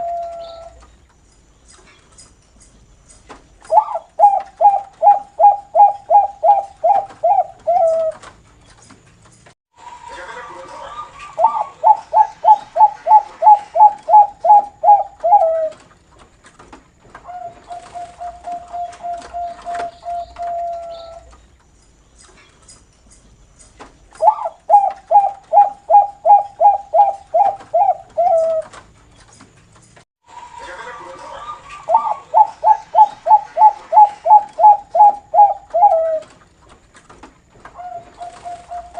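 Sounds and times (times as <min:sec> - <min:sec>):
dove cooing: 0:00.0 - 0:00.8, 0:03.7 - 0:08.3, 0:10.9 - 0:15.9, 0:17.2 - 0:21.3, 0:24.2 - 0:28.8, 0:31.3 - 0:36.4, 0:37.7 - 0:38.9
soft rapid dove trill: 0:10.0 - 0:15.8, 0:24.2 - 0:28.8, 0:30.3 - 0:36.4.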